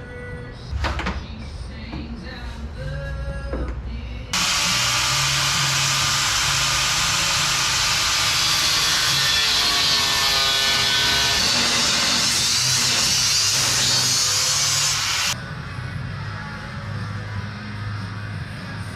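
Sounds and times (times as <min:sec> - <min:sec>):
power tool cutting steel: 0:04.4 - 0:15.4.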